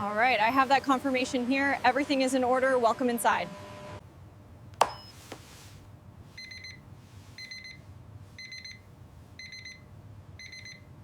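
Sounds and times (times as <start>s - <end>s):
electronic alarm beeping: 6.4s - 6.8s, 7.4s - 7.8s, 8.4s - 8.8s, 9.4s - 9.8s, 10.4s - 10.9s.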